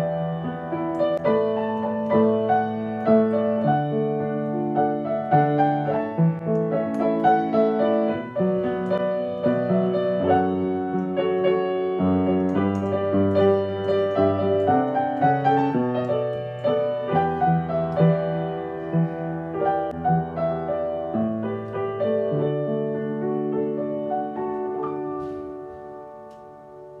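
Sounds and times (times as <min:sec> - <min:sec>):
solo piano playing: 0:00.0 - 0:27.0.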